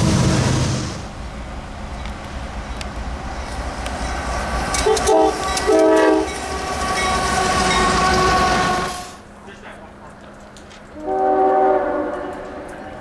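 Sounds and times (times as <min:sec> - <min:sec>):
train rushing past on rails: 0:00.0 - 0:13.0
train horn chords: 0:04.8 - 0:09.2, 0:11.0 - 0:13.0.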